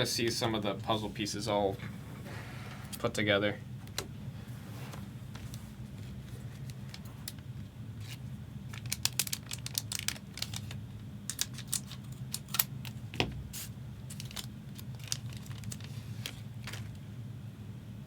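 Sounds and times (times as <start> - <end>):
steady low hum: 0.0 - 18.0
cards and wrappers clicking and crinkling: 5.4 - 13.2, 14.0 - 17.0.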